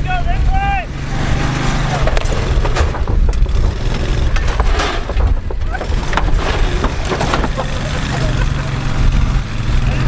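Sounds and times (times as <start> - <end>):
vehicle engine running hard: 0.0 - 10.0
crunching and cracking impacts: 1.7 - 8.6.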